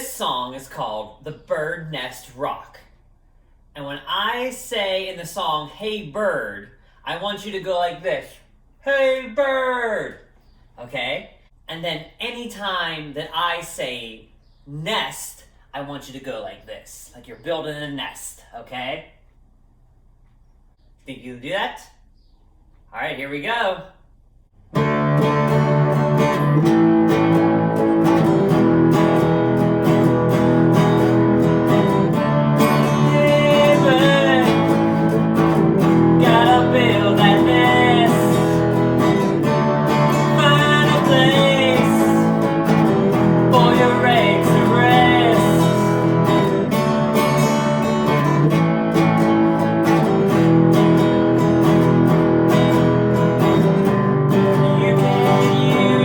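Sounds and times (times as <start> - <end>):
strummed acoustic guitar: 24.7 - 56.0
rock song: 24.8 - 56.0.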